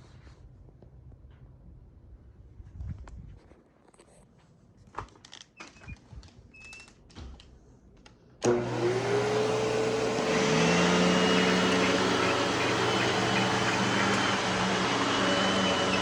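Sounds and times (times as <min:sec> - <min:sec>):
vacuum cleaner running: 0:08.4 - 0:16.0.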